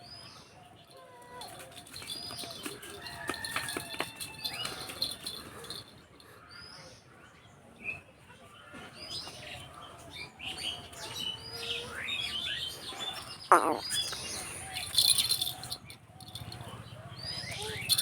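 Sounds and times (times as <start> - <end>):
small birds chirping: 4.4 - 18.0
loud sharp bird squawk: 13.5 - 14.2.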